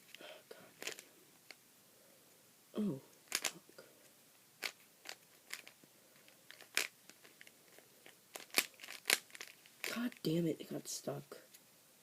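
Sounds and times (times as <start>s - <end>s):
puzzle cube layers clicking: 3.3s - 3.6s.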